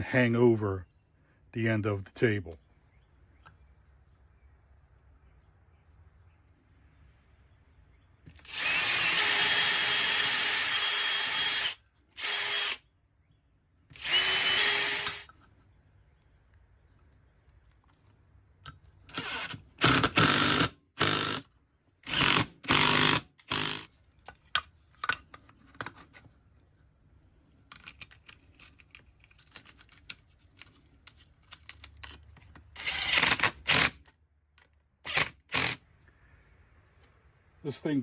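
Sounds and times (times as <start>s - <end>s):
power drill driving screws into wood: 8.3s - 12.8s, 13.9s - 15.4s, 19.1s - 23.9s, 32.8s - 34.1s, 35.0s - 35.9s.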